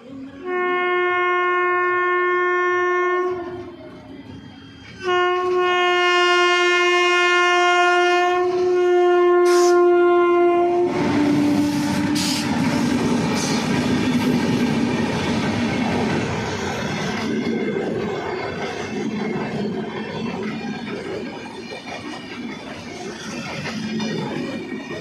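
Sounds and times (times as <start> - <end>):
locomotive horn blast: 0.4 - 3.6, 5.0 - 12.8
train wheels on track: 2.8 - 25.0.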